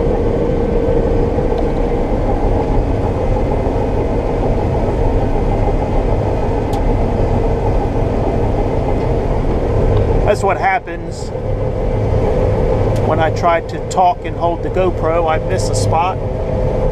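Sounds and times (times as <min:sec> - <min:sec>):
combine harvester running: 0:00.0 - 0:16.9.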